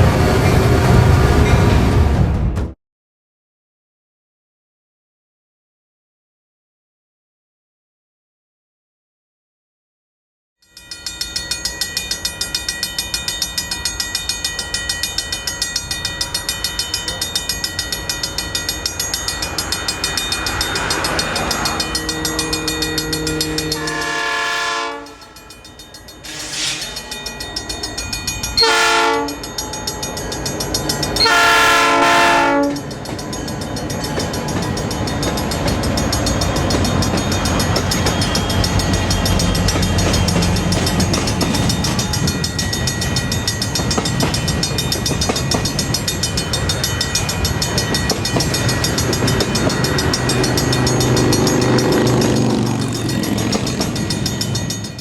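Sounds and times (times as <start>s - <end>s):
train rumbling past: 0.0s - 2.8s, 11.4s - 55.0s
crossing warning bell ringing: 10.6s - 55.0s
train air horn: 21.4s - 25.4s, 28.6s - 29.4s, 31.2s - 32.8s
wheels clicking over rail joints: 32.8s - 55.0s.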